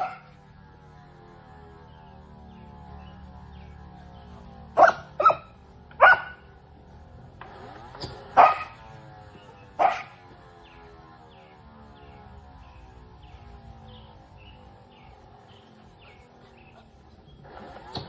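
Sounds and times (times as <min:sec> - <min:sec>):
dog barking: 0:00.0 - 0:00.4, 0:04.7 - 0:06.6, 0:08.3 - 0:08.9, 0:09.8 - 0:10.3.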